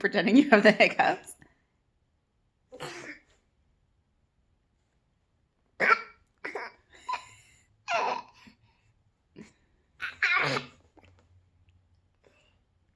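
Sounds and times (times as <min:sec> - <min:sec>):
boy making fake hiccups: 0:02.8 - 0:03.2, 0:05.8 - 0:06.9, 0:10.0 - 0:11.0.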